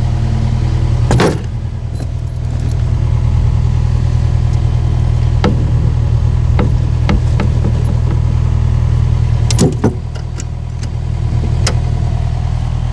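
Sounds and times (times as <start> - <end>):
engine idling: 0.0 - 12.9
sharp metallic clank: 1.1 - 2.9.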